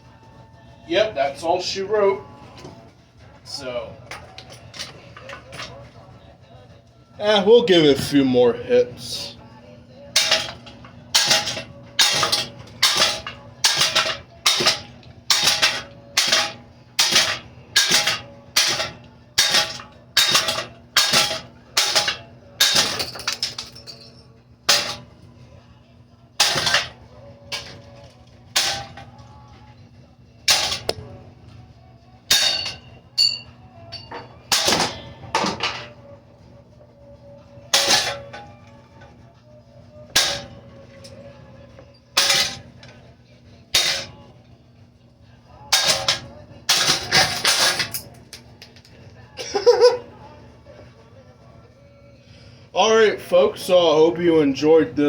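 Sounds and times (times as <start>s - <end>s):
ceiling fan struck clanging: 10.1s - 25.2s, 26.4s - 29.3s, 30.4s - 31.2s, 32.3s - 36.1s, 37.6s - 39.2s, 40.0s - 43.1s, 43.7s - 44.4s, 45.6s - 48.7s.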